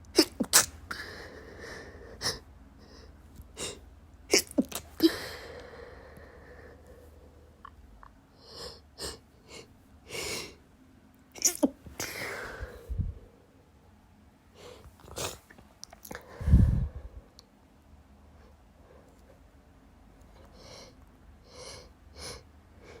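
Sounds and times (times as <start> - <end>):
person sneezing: 0.2 - 1.1, 3.6 - 5.4.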